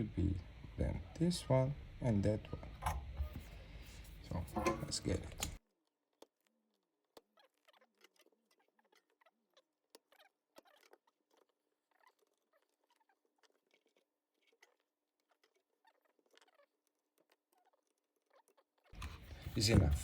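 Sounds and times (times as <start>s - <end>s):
faint steady hum: 0.0s - 5.6s
tool scratching circuit board: 1.2s - 5.6s.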